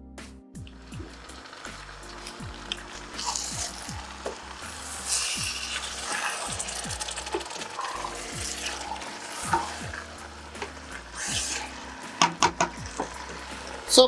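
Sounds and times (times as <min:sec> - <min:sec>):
soup sizzling in a pot: 0:00.7 - 0:14.0
spoon stirring: 0:00.7 - 0:14.0
spoon knocking against pot: 0:12.1 - 0:13.4.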